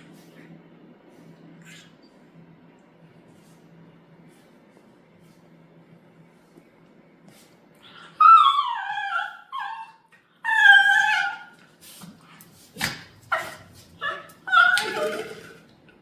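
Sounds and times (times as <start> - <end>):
puppies whining yelps: 7.9 - 11.6, 13.3 - 15.0.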